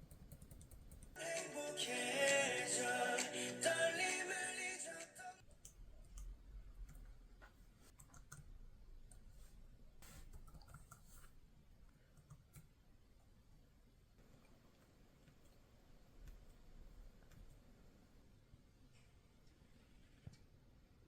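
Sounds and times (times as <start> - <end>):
background music: 1.2 - 5.4
faint clicks and taps: 14.2 - 18.0.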